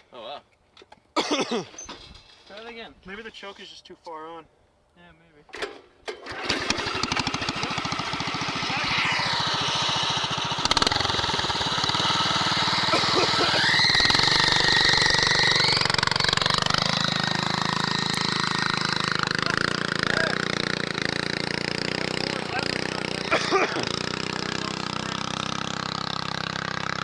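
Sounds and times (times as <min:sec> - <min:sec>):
go-kart engine revving: 0:06.2 - 0:27.0.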